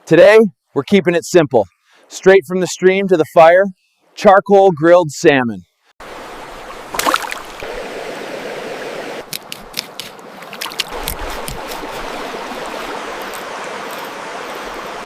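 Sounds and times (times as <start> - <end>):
stream water running: 6.0 - 15.0
sharp splashes: 6.1 - 15.0.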